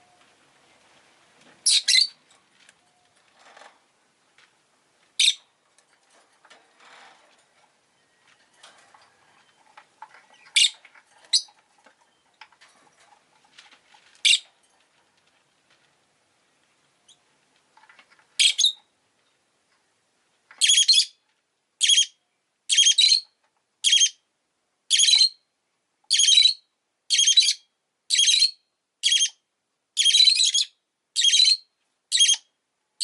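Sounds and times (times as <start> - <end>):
lovebird chirping: 1.6 - 2.2, 5.2 - 5.5, 10.3 - 12.2, 18.4 - 18.8, 21.8 - 24.2, 26.1 - 29.4, 30.0 - 32.5.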